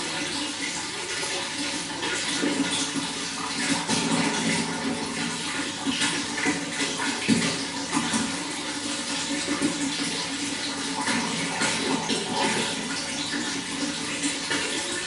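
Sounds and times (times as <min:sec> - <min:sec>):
running water splashing and gurgling: 0:00.0 - 0:15.0.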